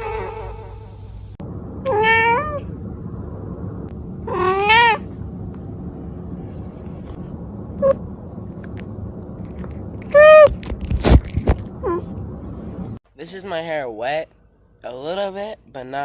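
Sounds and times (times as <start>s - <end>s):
cat meowing: 1.8s - 2.6s, 4.3s - 5.1s, 10.1s - 10.6s.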